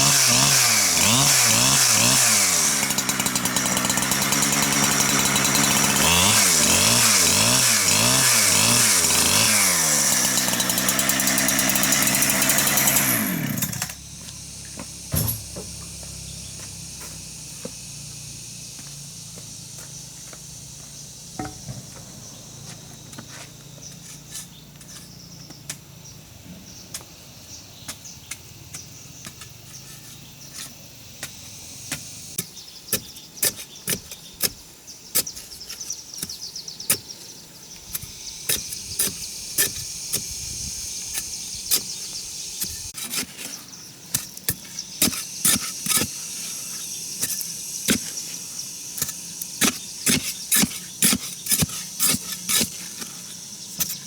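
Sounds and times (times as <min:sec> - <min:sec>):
high insect buzz: 0:00.0 - 0:54.0
tools knocking on wood: 0:21.4 - 0:22.1.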